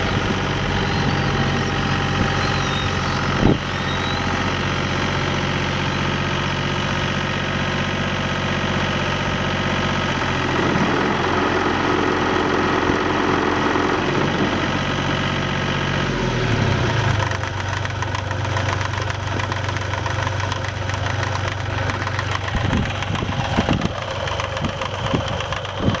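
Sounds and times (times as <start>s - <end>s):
backhoe engine running: 0.0s - 26.0s
short knocks and clanks: 17.2s - 26.0s.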